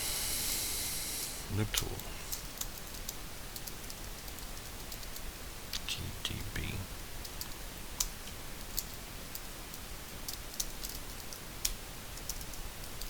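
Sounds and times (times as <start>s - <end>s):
faint steady hiss: 0.0s - 13.0s
computer keyboard typing: 1.8s - 5.3s, 7.2s - 13.0s.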